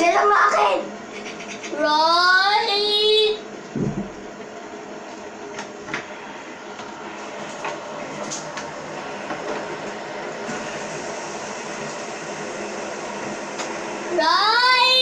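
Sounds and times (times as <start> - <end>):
fidget spinners whirring: 0.0 - 3.4.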